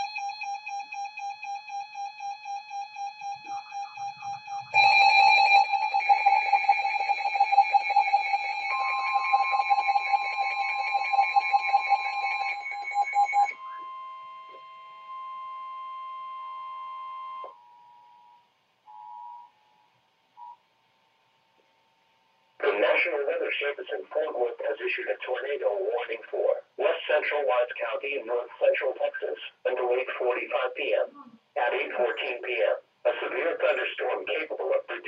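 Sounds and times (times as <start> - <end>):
steady high alert tone: 0.0 - 15.0
pulsing electronic alarm: 0.0 - 19.7.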